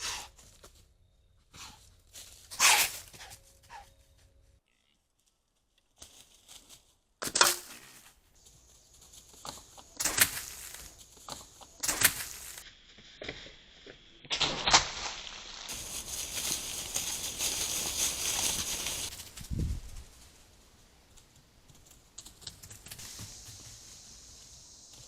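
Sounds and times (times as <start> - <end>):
deer bucks calling: 2.5 - 3.9.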